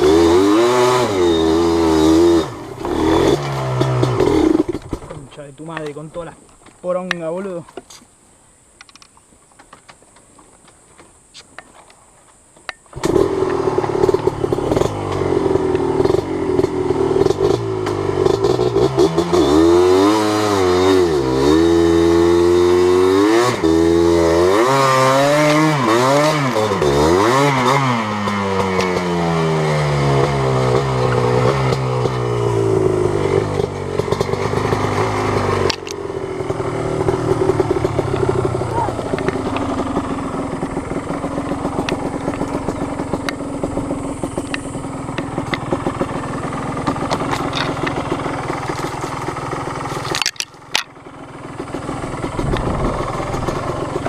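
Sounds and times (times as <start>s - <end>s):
two-stroke engine revving: 0.0s - 5.2s, 12.9s - 54.0s.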